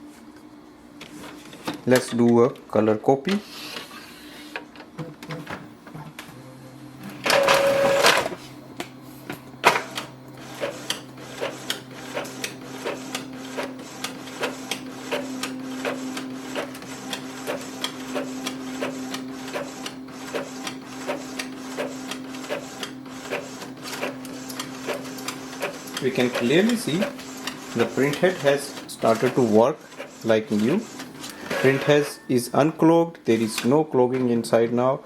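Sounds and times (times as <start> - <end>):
printer motor hum: 7.0 - 8.5, 9.6 - 32.7
loud printer mechanical whir: 7.0 - 33.8.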